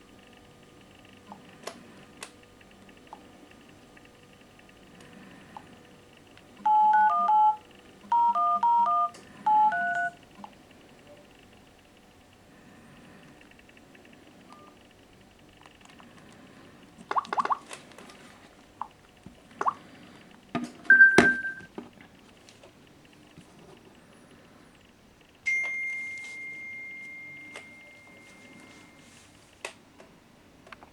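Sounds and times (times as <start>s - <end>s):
phone beep melody: 6.6s - 10.2s, 20.9s - 21.7s
bell-like chime: 25.5s - 29.1s.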